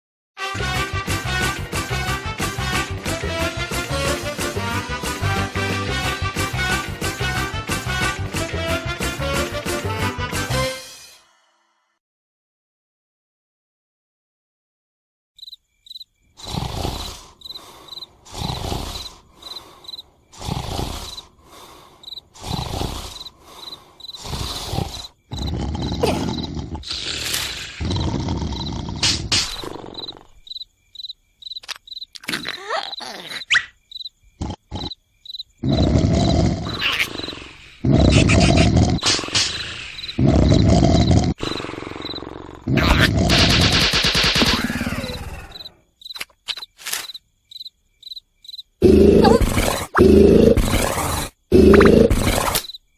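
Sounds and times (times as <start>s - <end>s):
crickets chirping: 15.4s - 52.9s
loud rumbling snore: 16.4s - 30.3s, 35.6s - 43.6s, 48.8s - 52.6s.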